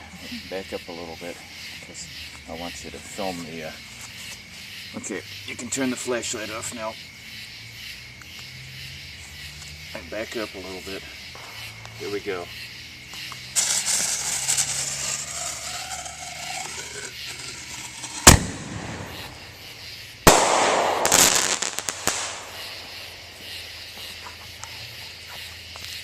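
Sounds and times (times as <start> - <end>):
fuse hissing and sputtering: 13.1 - 19.8
firework shell bursting with crackle: 13.1 - 24.0
firework launch bang: 13.5 - 23.6.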